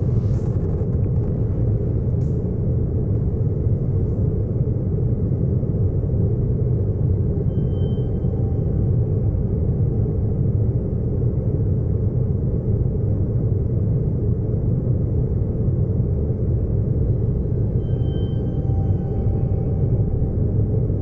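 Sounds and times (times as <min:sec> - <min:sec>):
low rumbling drone: 0:00.0 - 0:11.5, 0:15.3 - 0:21.0
faint high tone: 0:07.4 - 0:10.0, 0:17.0 - 0:21.0.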